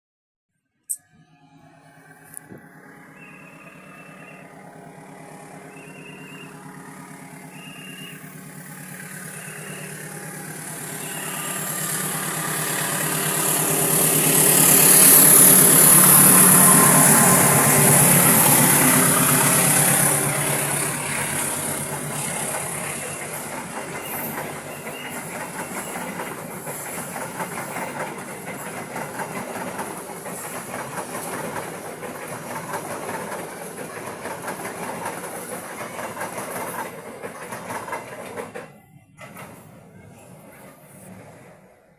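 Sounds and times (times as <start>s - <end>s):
diesel locomotive engine: 0.9s - 41.9s
train wheels clickety-clack: 5.7s - 41.7s.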